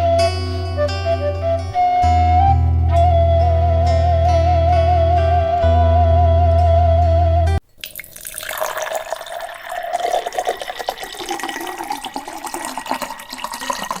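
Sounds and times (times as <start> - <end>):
music: 0.0 - 7.6
water trickling into a container: 7.7 - 14.0.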